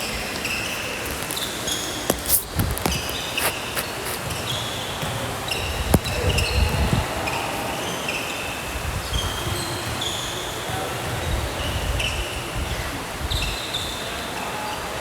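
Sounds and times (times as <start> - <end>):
sneakers squeaking: 0.0 - 12.2
basketball thuds: 1.4 - 6.6.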